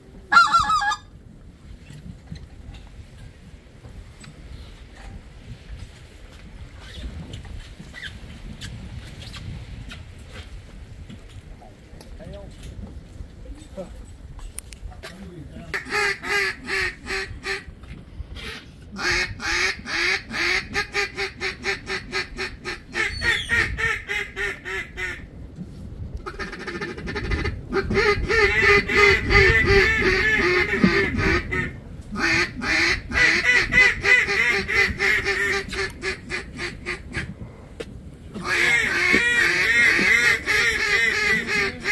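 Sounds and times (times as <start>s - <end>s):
duck quacking: 0.3s - 1.0s, 15.7s - 17.7s, 18.4s - 25.2s, 26.2s - 37.3s, 38.4s - 41.9s.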